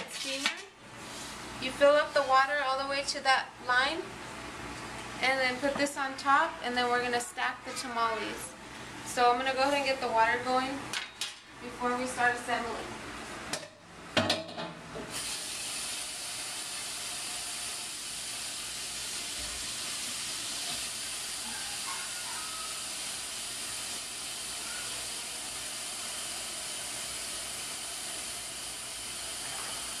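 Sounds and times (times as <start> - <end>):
tap water running into pot: 15.1 - 30.0.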